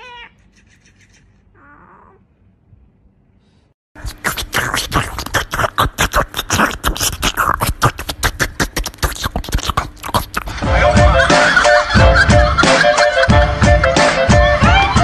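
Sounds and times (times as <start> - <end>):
fast percussive clicking rhythm: 4.1 - 10.6.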